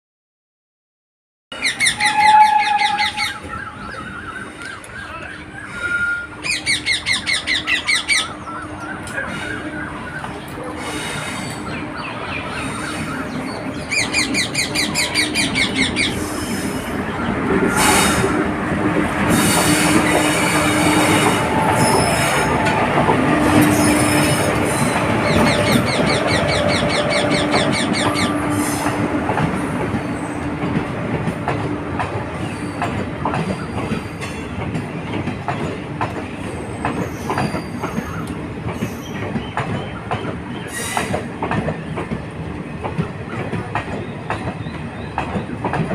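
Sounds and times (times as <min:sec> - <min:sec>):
train wheel rumble: 0:05.6 - 0:45.9
high metallic squeals: 0:19.3 - 0:22.7, 0:23.4 - 0:28.8.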